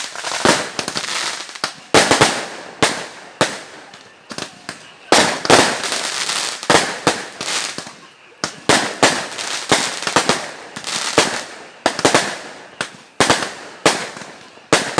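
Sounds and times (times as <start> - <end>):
fireworks bangs and crackling: 0.0 - 14.9
small firework pops: 0.0 - 14.9.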